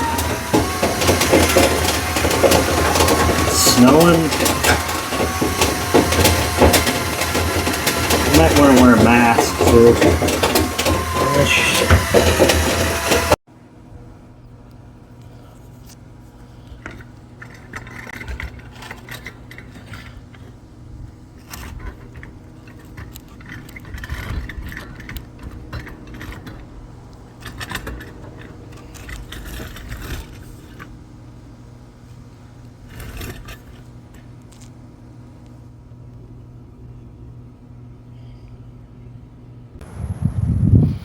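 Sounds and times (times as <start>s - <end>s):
scraping and metallic rattling: 0.0s - 13.4s, 21.4s - 31.0s.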